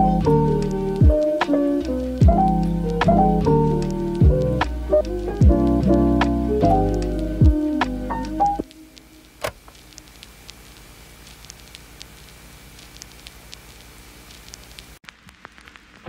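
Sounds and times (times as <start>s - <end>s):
faint crackling hiss: 0.0s - 16.0s
small ticks: 6.9s - 15.9s.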